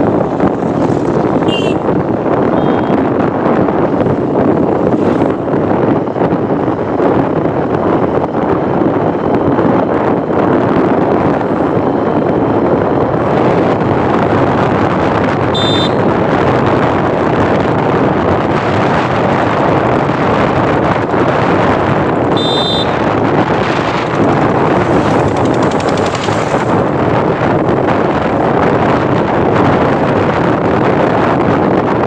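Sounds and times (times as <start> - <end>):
wind on microphone: 0.0 - 32.0
train rumbling: 22.9 - 29.0.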